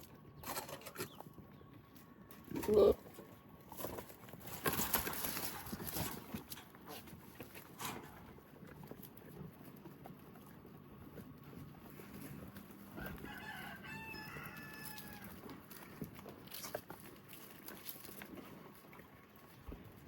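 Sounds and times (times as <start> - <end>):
rooster crowing: 12.9 - 15.4.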